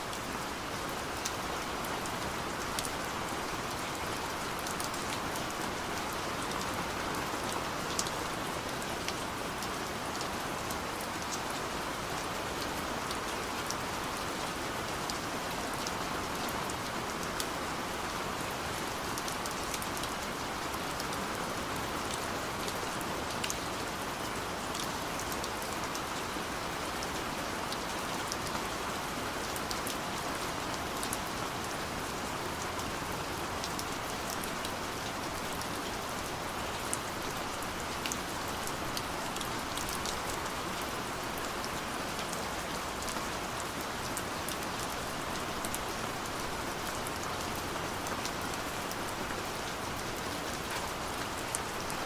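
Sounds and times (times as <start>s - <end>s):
steady rain falling: 0.0s - 52.0s.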